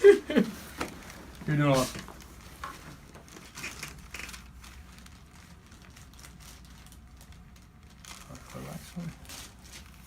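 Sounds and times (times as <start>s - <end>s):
steady low hum: 0.0s - 10.0s
faint rustling and handling: 0.4s - 10.0s.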